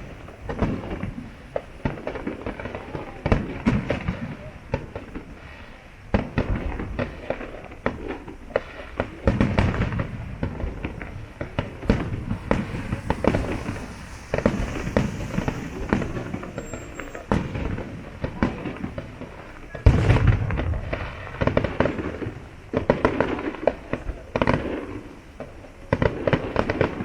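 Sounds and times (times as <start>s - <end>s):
fireworks bangs and crackling: 0.0s - 27.0s
low rumble: 10.1s - 19.3s.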